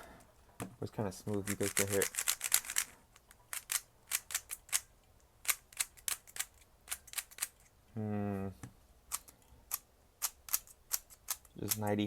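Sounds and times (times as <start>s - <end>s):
puzzle cube plastic clicking: 1.3s - 7.7s.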